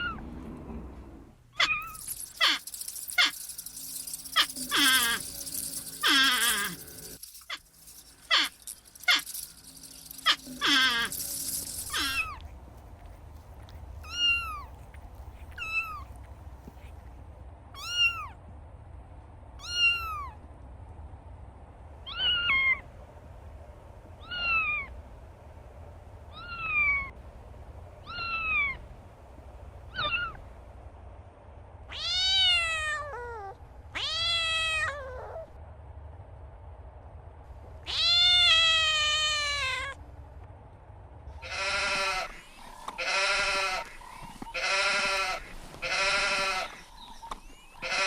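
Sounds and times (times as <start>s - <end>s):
kitten meowing: 14.0s - 14.8s, 15.6s - 16.1s, 17.8s - 18.4s, 19.6s - 20.4s, 22.1s - 22.8s, 28.0s - 28.8s, 29.9s - 30.4s, 31.9s - 35.5s, 37.9s - 40.0s.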